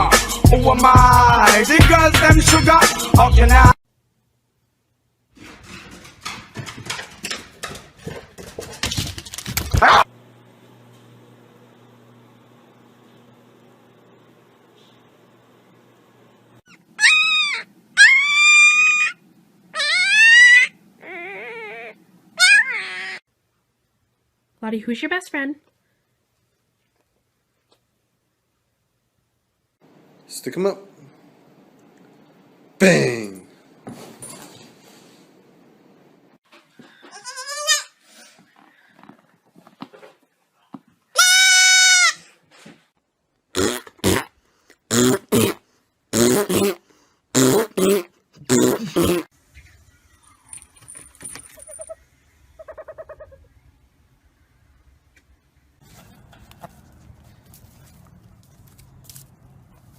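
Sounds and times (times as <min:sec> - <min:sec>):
dog whining: 0:16.7 - 0:23.2, 0:50.1 - 0:53.5
goat bleating: 0:37.0 - 0:38.0, 0:41.2 - 0:42.2.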